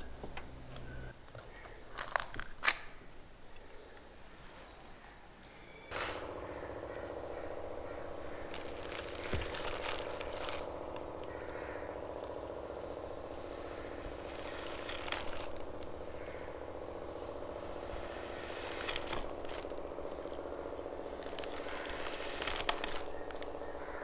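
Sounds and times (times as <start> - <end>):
steady low hum: 0.0 - 1.9, 2.9 - 24.0
sharp ticks: 5.9 - 24.0
sand crackling scrapes: 6.6 - 11.7, 12.6 - 24.0.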